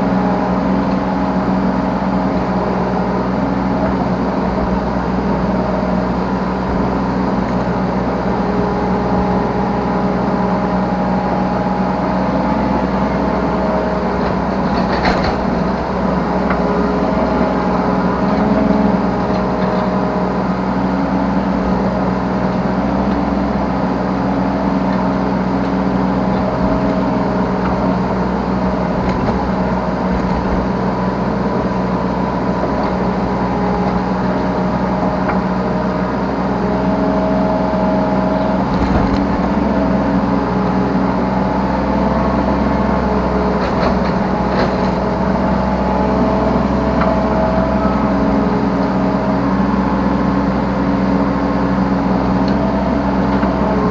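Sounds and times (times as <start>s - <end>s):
excavator diesel engine running: 0.0s - 53.9s.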